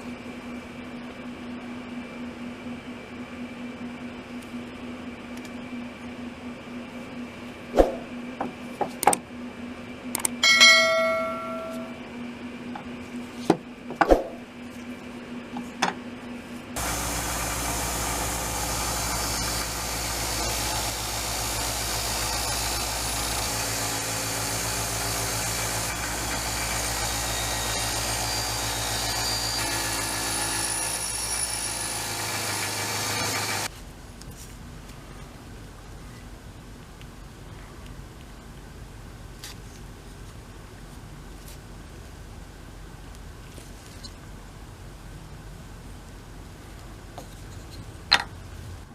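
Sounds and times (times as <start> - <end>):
ringing metallic strike: 10.4 - 12.0
power tool running: 16.8 - 33.7.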